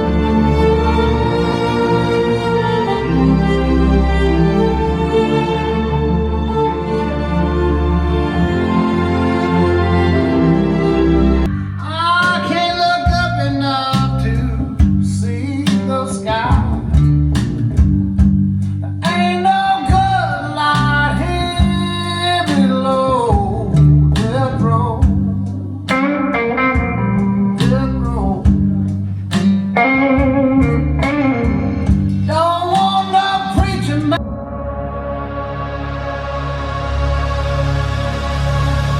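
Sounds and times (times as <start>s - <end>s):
guitar: 0.0s - 38.9s
plucked bass line: 0.0s - 38.9s
person singing: 11.4s - 16.8s, 18.8s - 26.0s, 30.2s - 38.8s.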